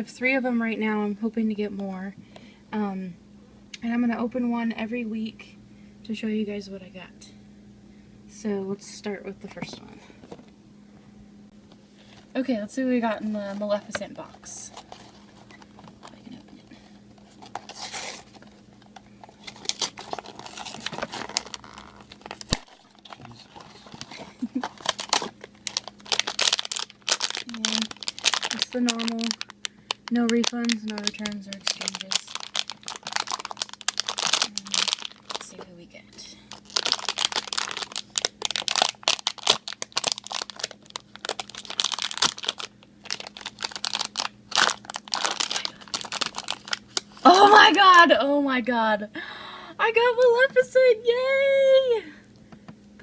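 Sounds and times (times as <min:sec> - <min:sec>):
packaging crinkling and tearing: 0:14.7 - 0:16.2, 0:17.2 - 0:35.6, 0:36.5 - 0:47.7.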